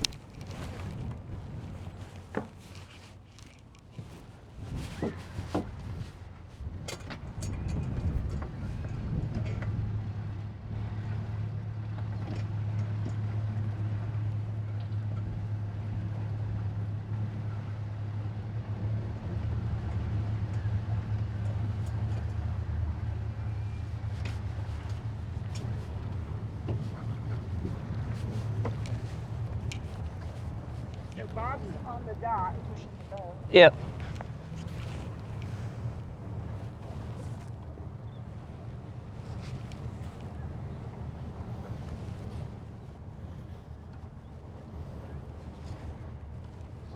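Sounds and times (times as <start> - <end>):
boat engine running: 0.0 - 3.3, 3.9 - 46.9.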